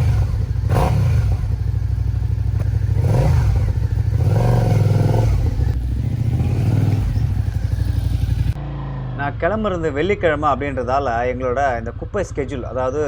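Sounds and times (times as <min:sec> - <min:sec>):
motorcycle engine revving: 0:00.0 - 0:11.9.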